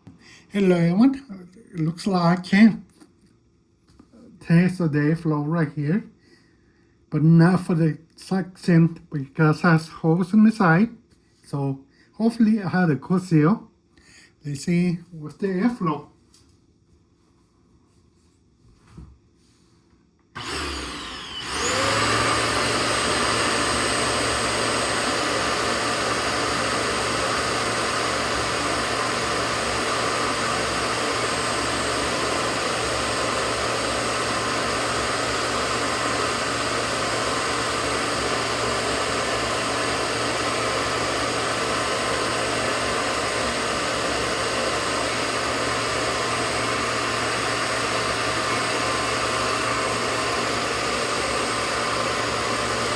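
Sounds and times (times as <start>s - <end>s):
vacuum cleaner running: 20.4s - 52.9s.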